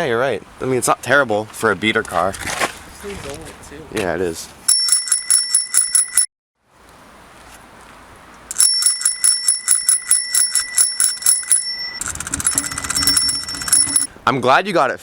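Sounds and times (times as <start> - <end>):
bicycle bell ringing rapidly: 4.7 - 6.3, 8.5 - 14.1.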